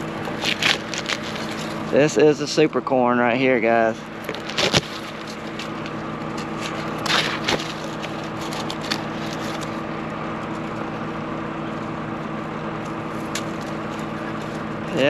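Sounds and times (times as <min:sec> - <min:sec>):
corn husks crackling and tearing: 0:00.0 - 0:02.6, 0:03.9 - 0:10.9, 0:12.7 - 0:15.0
steady engine hum: 0:00.0 - 0:15.0.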